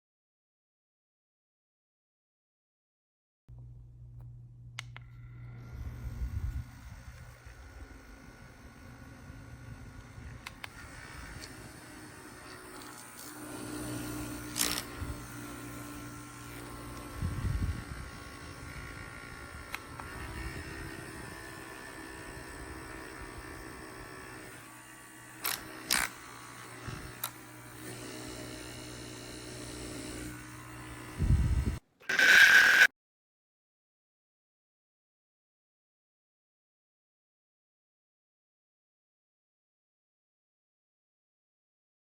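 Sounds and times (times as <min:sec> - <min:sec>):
small fan motor whirring: 0:04.8 - 0:32.9.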